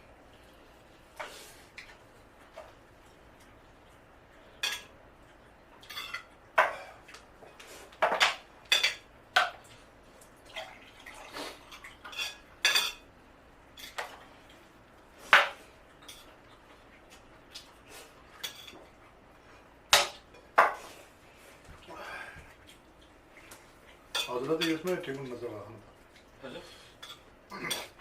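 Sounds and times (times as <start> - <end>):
spoons clinking against plates: 4.6 - 5.0, 5.8 - 6.9, 8.0 - 9.7, 11.7 - 13.1, 15.4 - 16.4, 18.4 - 18.9, 24.1 - 24.9, 26.9 - 28.0.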